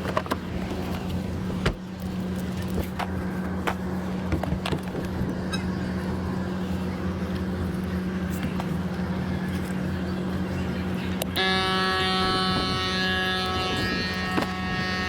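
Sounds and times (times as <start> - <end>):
sustained buzzing tone: 11.2 - 15.0.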